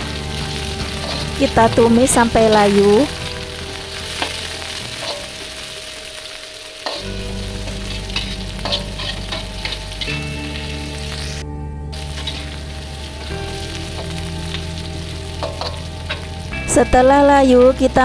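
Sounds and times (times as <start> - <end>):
vegetables sizzling in oil: 0.0 - 11.4, 12.0 - 18.0
spatula scraping pan: 7.7 - 11.4.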